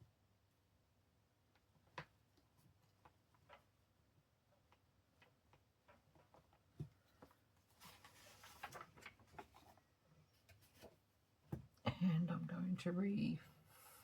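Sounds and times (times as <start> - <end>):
paper rustle: 7.1 - 9.8.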